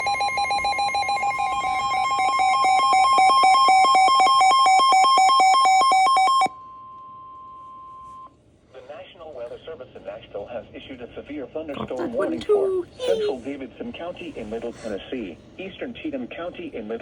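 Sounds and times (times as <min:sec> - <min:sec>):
rapidly pulsing electronic alarm: 0:00.0 - 0:06.5.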